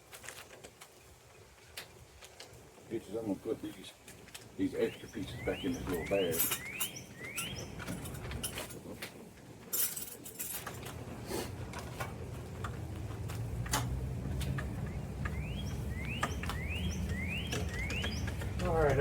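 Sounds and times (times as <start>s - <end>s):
bird chirping: 4.6s - 8.1s, 14.5s - 19.0s
small metal parts clinking: 6.2s - 8.8s, 9.7s - 10.9s.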